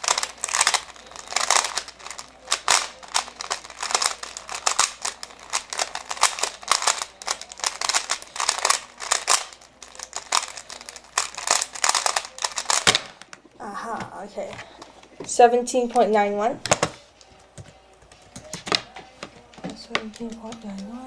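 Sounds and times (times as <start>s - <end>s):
plastic puzzle cube clicking: 0.0s - 13.4s.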